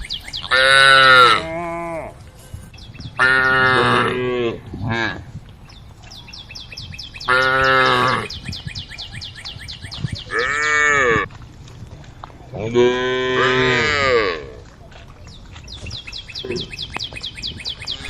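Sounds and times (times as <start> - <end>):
cows mooing: 0.5 - 2.2, 3.2 - 5.2, 7.3 - 8.4, 10.3 - 11.3, 12.6 - 14.6.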